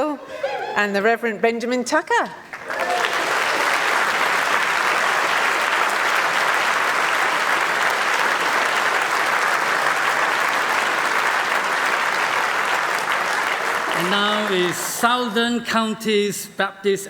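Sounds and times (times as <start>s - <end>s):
congregation applauding: 2.4s - 15.7s.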